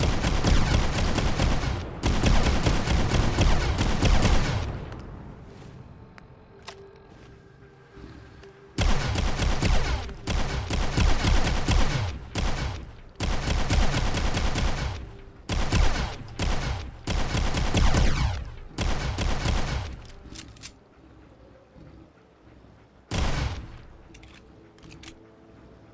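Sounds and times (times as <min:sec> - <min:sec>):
pistol firing rapid shots: 0:00.0 - 0:04.7, 0:08.8 - 0:20.1, 0:23.1 - 0:23.8.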